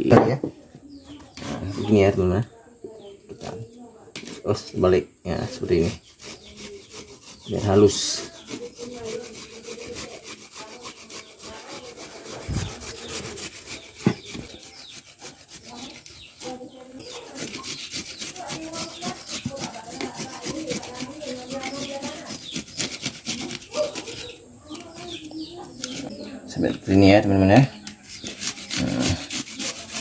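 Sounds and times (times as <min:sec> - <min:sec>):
garlic rasping on a grater: 0:05.8 - 0:25.1, 0:28.0 - 0:30.0.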